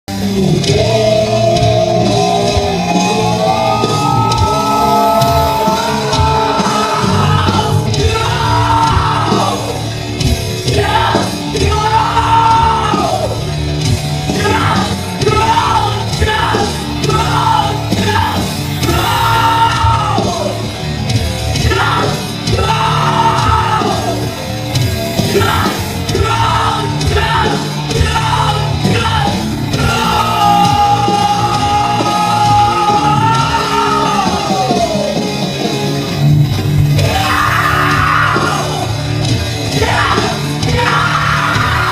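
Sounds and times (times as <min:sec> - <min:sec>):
loud rock band playing: 0:00.1 - 0:41.9
person shouting lyrics: 0:00.7 - 0:09.7, 0:10.6 - 0:13.4, 0:14.3 - 0:20.6, 0:21.6 - 0:24.2, 0:25.3 - 0:35.2, 0:39.7 - 0:41.9.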